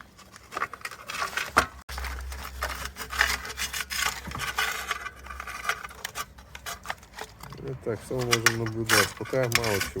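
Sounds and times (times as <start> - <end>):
plastic rubbing and scraping: 0.0 - 10.0.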